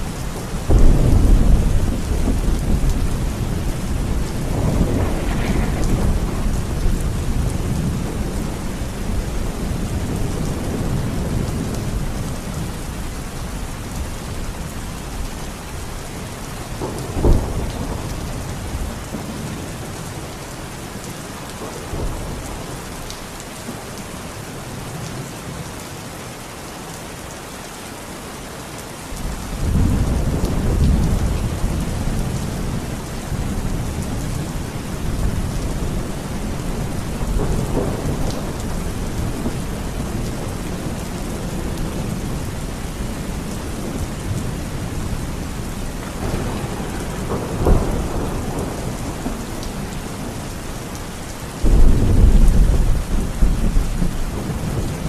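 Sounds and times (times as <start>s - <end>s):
low rumble of thunder: 0.0s - 20.4s, 29.2s - 51.0s, 51.6s - 55.0s
steady rain falling: 0.0s - 55.0s
sharp thunder crack: 4.4s - 7.2s.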